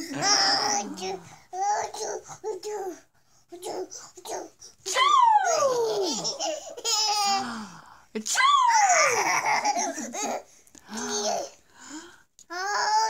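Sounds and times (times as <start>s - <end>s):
toddler laughing: 5.5s - 7.4s, 8.8s - 10.5s.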